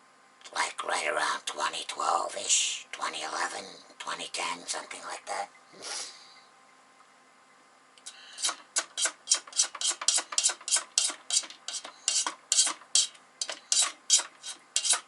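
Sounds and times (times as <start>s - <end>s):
utensil stirring dough in bowl: 8.4s - 15.0s.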